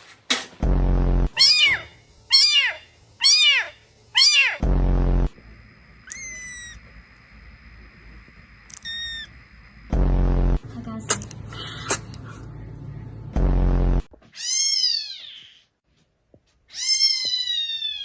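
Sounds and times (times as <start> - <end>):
loud low buzzing tone: 0.6 - 1.4, 4.6 - 11.4, 12.5 - 14.1
faint high whine: 1.3 - 11.3
kitten meowing: 1.4 - 4.6, 6.0 - 6.8, 8.7 - 9.3, 16.7 - 18.0.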